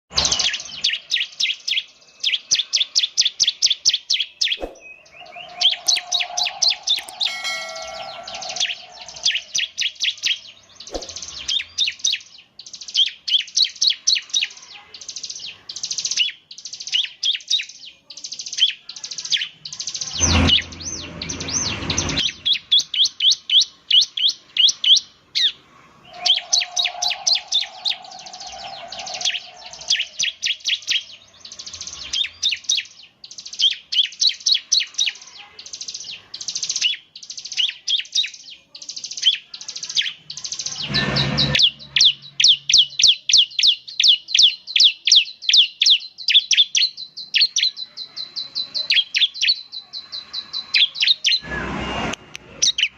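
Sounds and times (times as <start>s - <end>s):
bird singing rapid chip notes: 0.2s - 14.5s, 18.4s - 35.2s
low rumbling noise: 4.8s - 9.7s, 20.1s - 22.5s, 25.6s - 30.4s, 40.7s - 42.1s.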